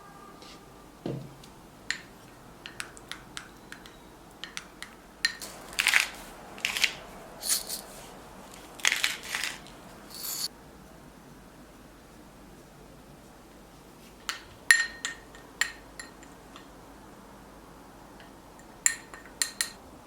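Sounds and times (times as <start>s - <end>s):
crunching rustles: 0.3s - 10.5s.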